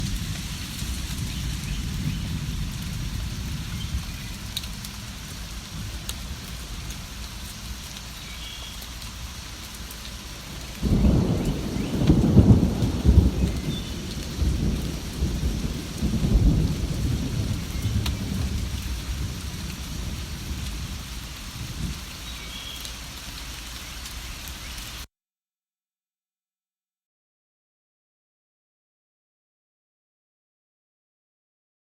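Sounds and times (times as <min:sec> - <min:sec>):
thunder rumbling: 0:00.0 - 0:08.4, 0:10.2 - 0:22.3
steady rain pouring: 0:00.0 - 0:25.1.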